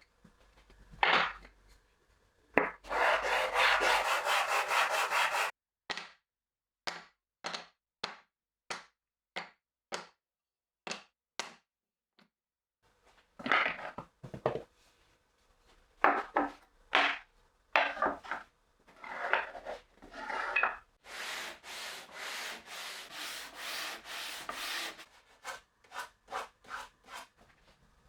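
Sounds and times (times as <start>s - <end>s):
hand tool rubbing wood: 2.8s - 5.5s, 18.0s - 27.6s.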